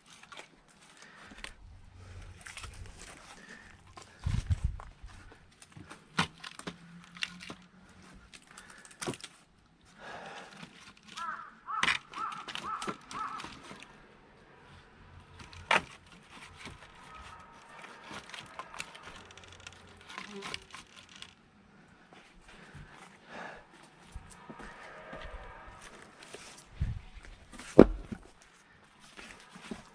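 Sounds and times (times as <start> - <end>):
axe splitting firewood: 2.4 - 9.4, 10.0 - 13.9, 15.3 - 21.4, 27.5 - 28.4
crow cawing: 11.2 - 13.9, 17.0 - 19.4.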